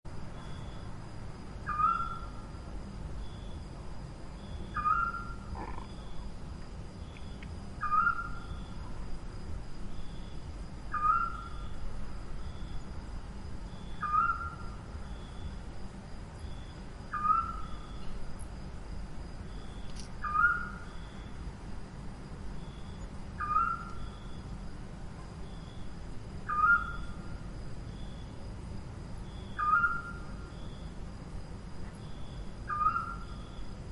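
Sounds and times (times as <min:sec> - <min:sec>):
owl calling: 0:01.7 - 0:02.4, 0:04.7 - 0:06.1, 0:07.8 - 0:08.6, 0:10.9 - 0:11.7, 0:14.0 - 0:14.8, 0:17.1 - 0:17.9, 0:20.2 - 0:20.9, 0:23.4 - 0:24.2, 0:26.5 - 0:27.2, 0:29.5 - 0:30.4, 0:32.7 - 0:33.4.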